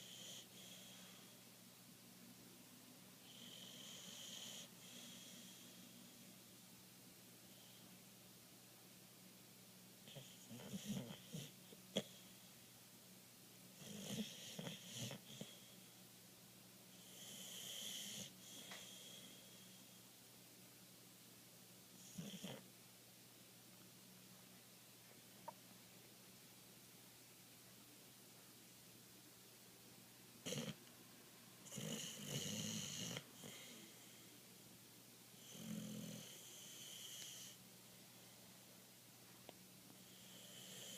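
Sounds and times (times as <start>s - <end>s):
dog snoring: 0.0s - 1.2s, 3.2s - 5.9s, 10.0s - 12.4s, 13.8s - 15.8s, 16.9s - 19.8s, 22.0s - 22.6s, 30.4s - 30.8s, 31.6s - 34.2s, 35.4s - 37.6s, 40.0s - 40.9s.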